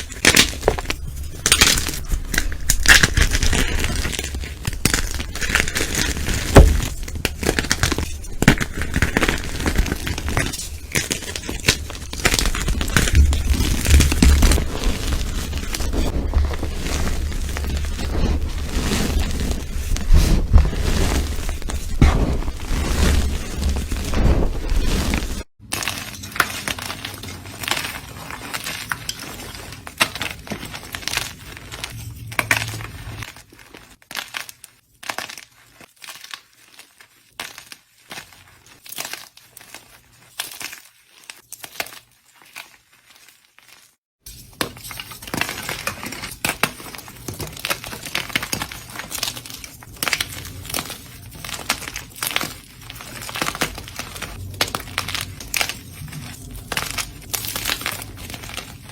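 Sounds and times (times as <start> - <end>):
chalk being crushed: 0.0 - 26.9.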